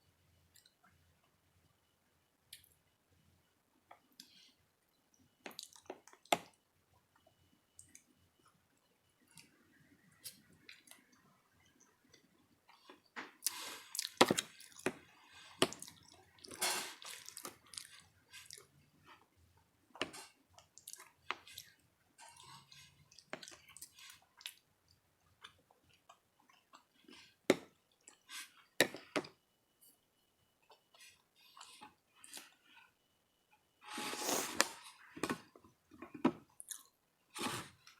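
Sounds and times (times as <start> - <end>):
wet chewing and mouth sounds: 5.5 - 6.3, 12.1 - 18.7, 20.6 - 22.5, 36.5 - 37.0.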